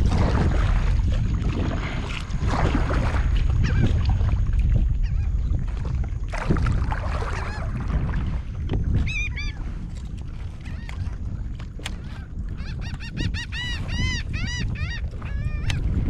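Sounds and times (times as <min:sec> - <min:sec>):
steady low rumble: 0:00.0 - 0:16.0
birds honking calls: 0:12.6 - 0:15.8.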